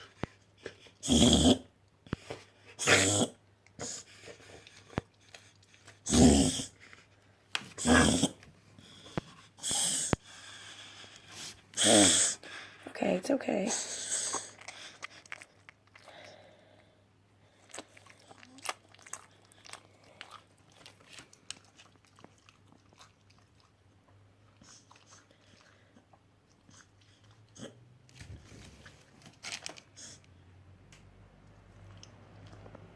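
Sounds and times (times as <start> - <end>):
dog licking and chewing: 17.5 - 27.6.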